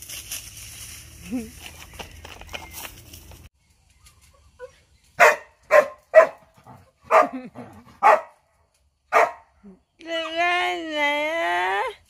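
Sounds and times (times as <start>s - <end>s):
dog barking: 5.2s - 7.4s, 8.0s - 8.4s, 9.1s - 9.5s.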